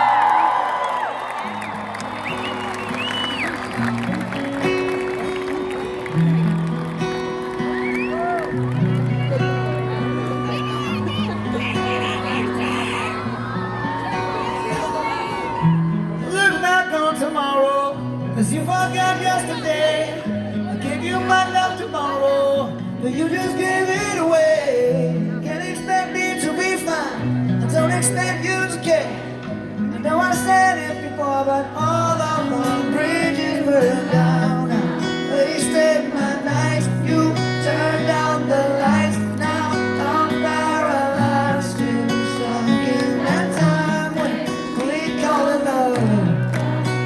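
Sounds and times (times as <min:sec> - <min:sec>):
person singing: 0:31.2 - 0:47.0.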